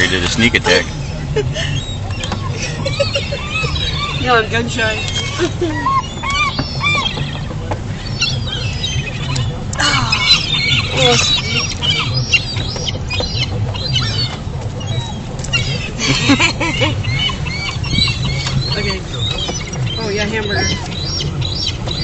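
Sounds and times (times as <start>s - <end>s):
gulls calling: 0.0s - 22.0s
steady low hum: 0.0s - 22.0s.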